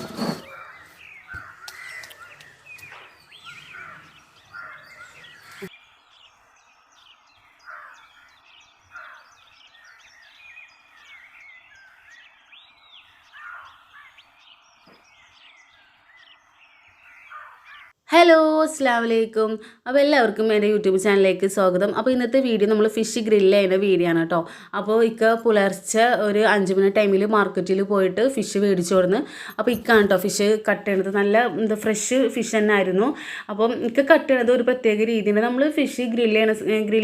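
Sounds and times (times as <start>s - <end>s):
birds chirping and whistling: 0.0s - 18.0s
bird cawing: 0.4s - 17.9s.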